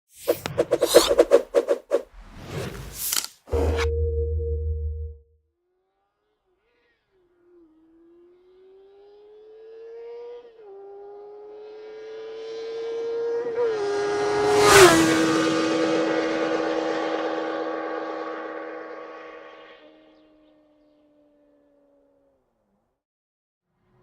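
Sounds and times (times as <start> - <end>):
motorcycle passing by: 6.2 - 21.5.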